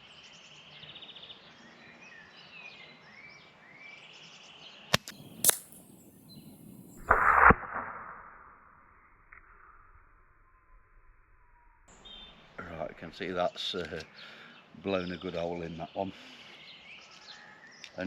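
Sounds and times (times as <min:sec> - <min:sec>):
birds singing faintly: 0:00.0 - 0:07.1, 0:09.1 - 0:18.0
air rifle shot: 0:05.0 - 0:09.7
burst of noise: 0:05.0 - 0:12.5.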